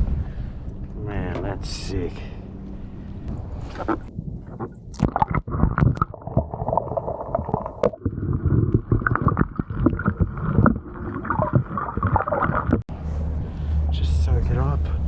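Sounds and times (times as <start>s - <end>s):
muffled water sloshing: 0.0s - 13.9s
knocks and splashes: 3.7s - 12.8s.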